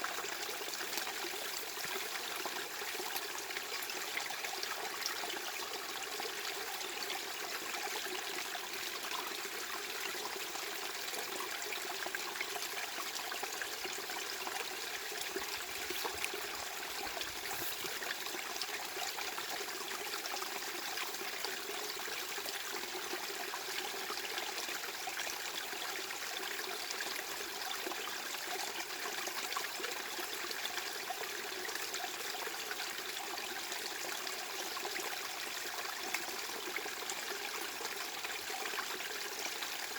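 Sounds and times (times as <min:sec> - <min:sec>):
running water trickling: 0:13.8 - 0:19.7.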